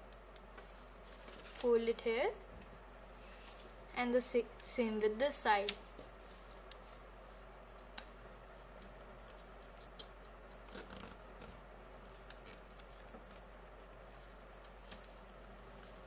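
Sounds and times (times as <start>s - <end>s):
steady low hum: 0.0s - 16.0s
paper crinkling: 1.0s - 1.8s, 9.3s - 16.0s.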